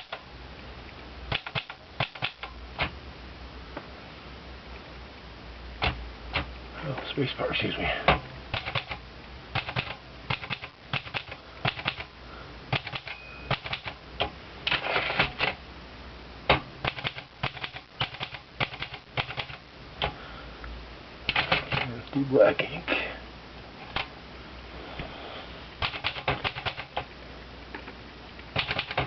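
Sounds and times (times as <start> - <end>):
typewriter keys clicking: 1.3 - 2.9, 8.5 - 9.0, 9.6 - 12.1, 12.7 - 14.0, 16.8 - 19.6, 21.3 - 21.9, 25.8 - 27.1, 28.6 - 29.0.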